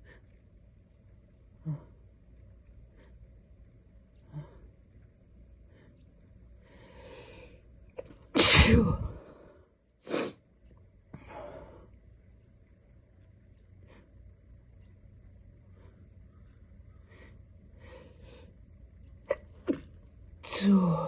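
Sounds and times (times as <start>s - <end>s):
person sneezing: 8.4s - 9.2s.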